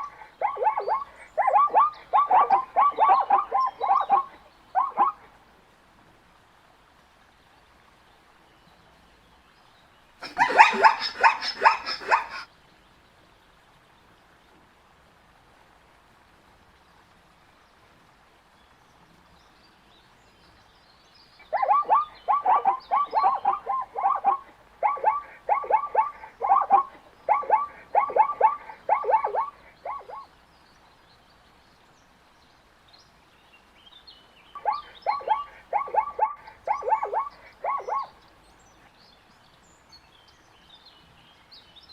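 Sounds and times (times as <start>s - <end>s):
zebra barking brays: 0.0s - 5.2s, 10.2s - 12.5s, 21.4s - 30.2s, 34.6s - 38.1s.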